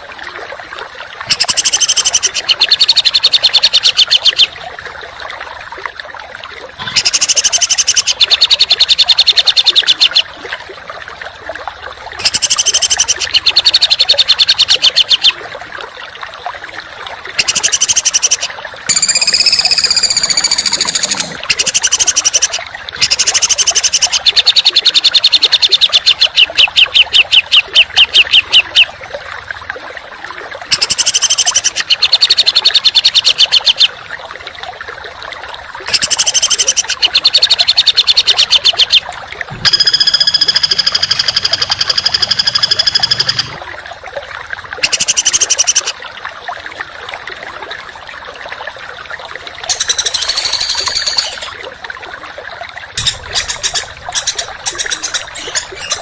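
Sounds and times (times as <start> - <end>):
songbird singing harsh phrases: 1.3 - 4.5, 6.8 - 10.2, 12.2 - 15.4, 17.4 - 28.9, 30.7 - 33.9, 35.9 - 43.6, 49.7 - 51.5.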